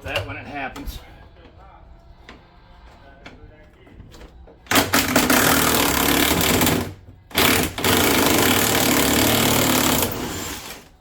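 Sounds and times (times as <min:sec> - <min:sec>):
impact wrench hammering: 0:04.7 - 0:10.8.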